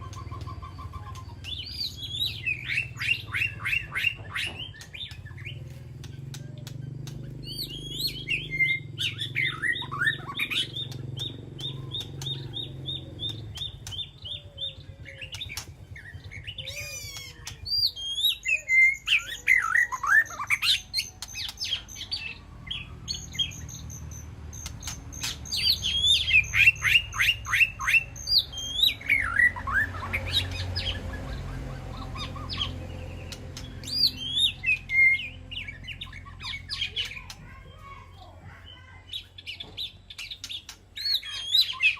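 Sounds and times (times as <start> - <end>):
songbird singing: 0.0 - 41.9.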